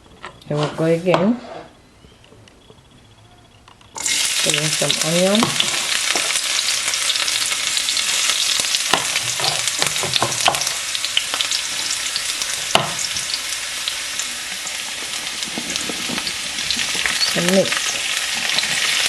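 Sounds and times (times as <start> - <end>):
onion sizzling in hot oil: 4.0 - 19.0
utensil knocking and scraping pan: 8.9 - 10.7.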